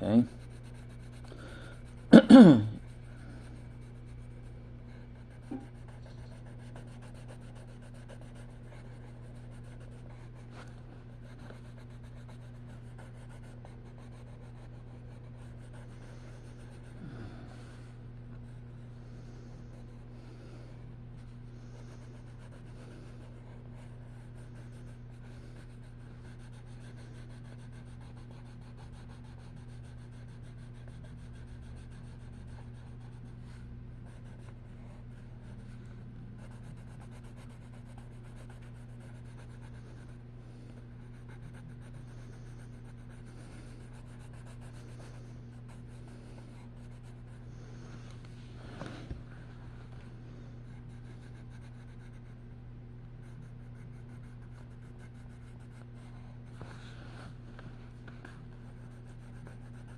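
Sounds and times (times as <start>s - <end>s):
low electrical hum: 0.0s - 59.9s.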